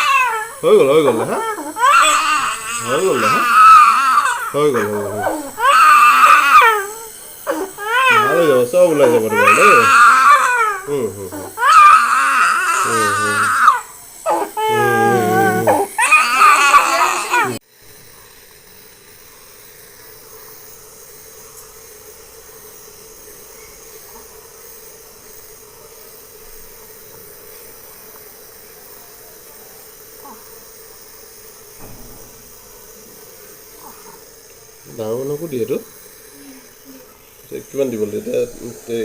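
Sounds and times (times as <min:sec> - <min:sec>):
baby crying: 0:00.0 - 0:17.6
nebulizer compressor humming: 0:00.0 - 0:39.0.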